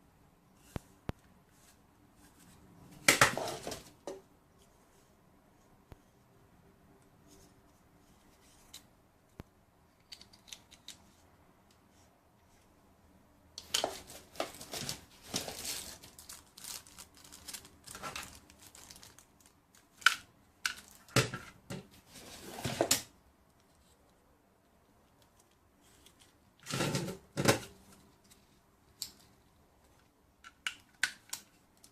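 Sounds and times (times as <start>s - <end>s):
packaging rustling and crinkling: 13.7s - 20.1s.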